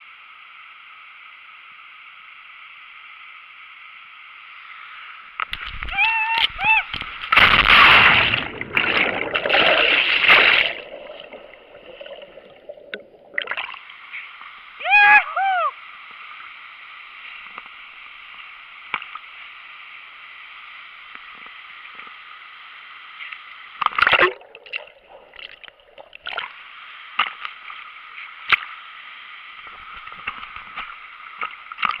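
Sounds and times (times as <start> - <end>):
sharp water splashes: 5.5 - 14.0, 23.8 - 26.6
loud splash of person jumping in: 7.2 - 11.3
muffled underwater gurgling: 8.1 - 14.3.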